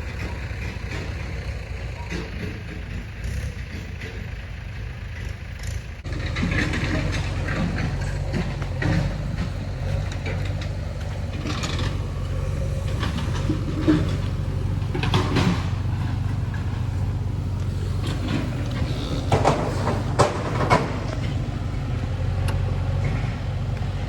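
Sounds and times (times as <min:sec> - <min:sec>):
diesel engine running: 0:00.0 - 0:24.0
engine clattering: 0:00.0 - 0:24.0.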